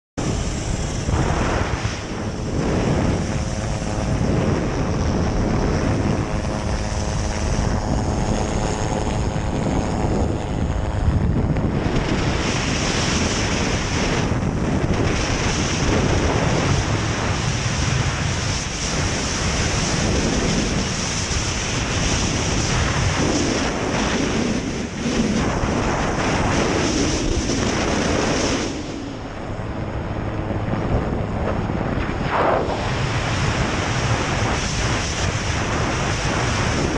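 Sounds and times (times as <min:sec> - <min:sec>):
helicopter engine and rotor: 0:00.2 - 0:36.9
wind buffeting microphone: 0:00.2 - 0:36.9.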